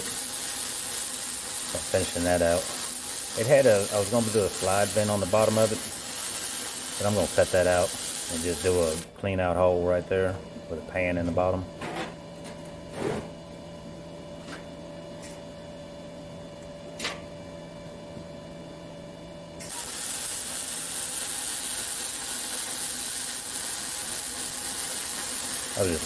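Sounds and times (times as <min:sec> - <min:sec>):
welding arc crackling hiss: 0:00.0 - 0:09.1, 0:19.6 - 0:26.0
electrical hum: 0:00.0 - 0:26.0.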